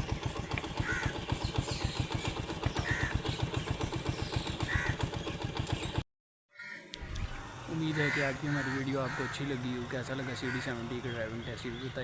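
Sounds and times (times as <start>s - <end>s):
motorcycle engine idling: 0.0s - 6.0s, 7.0s - 12.0s
crow cawing: 0.8s - 1.2s, 2.8s - 3.3s, 4.7s - 5.1s, 6.5s - 7.2s, 7.8s - 11.2s.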